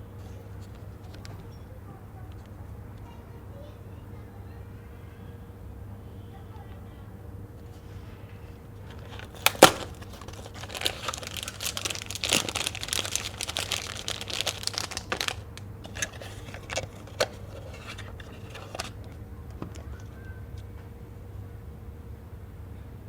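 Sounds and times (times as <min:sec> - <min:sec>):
plastic wrapper crinkling: 0:08.8 - 0:20.1.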